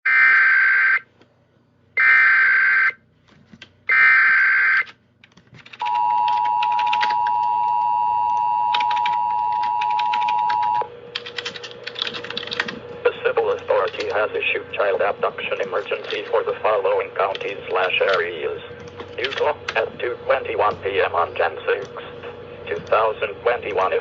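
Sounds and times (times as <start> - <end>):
two-tone attention signal: 5.8 - 10.8.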